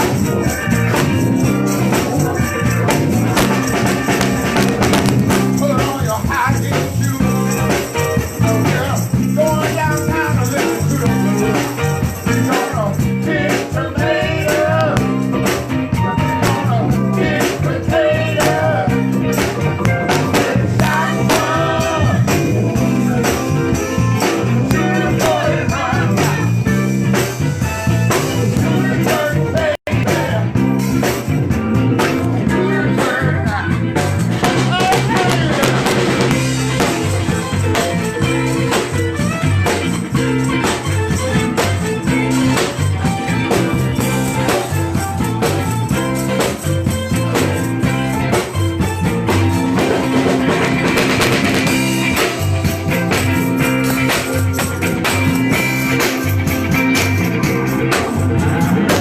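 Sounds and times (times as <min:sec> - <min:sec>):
band playing a song: 0:00.0 - 0:59.0
rhythmic percussion: 0:00.0 - 0:59.0
person singing: 0:00.1 - 0:27.0, 0:28.1 - 0:30.7, 0:32.3 - 0:37.5.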